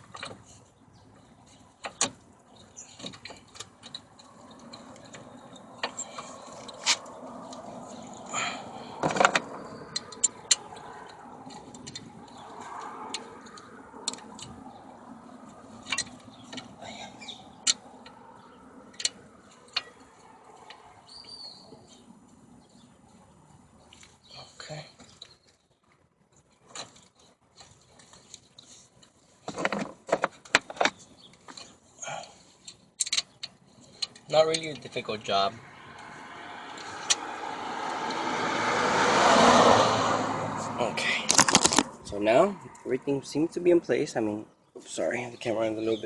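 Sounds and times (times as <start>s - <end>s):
metallic clicks of brake parts: 1.2s - 8.2s, 9.1s - 14.6s, 15.5s - 18.2s, 18.9s - 22.4s, 25.0s - 35.0s.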